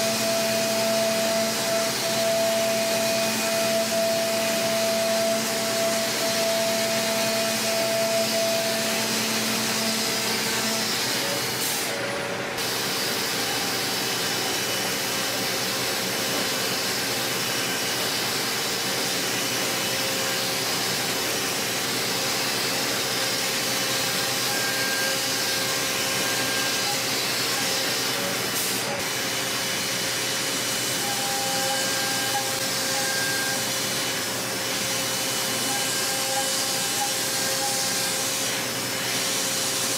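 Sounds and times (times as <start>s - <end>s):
machine whining tones: 31.0s - 33.8s.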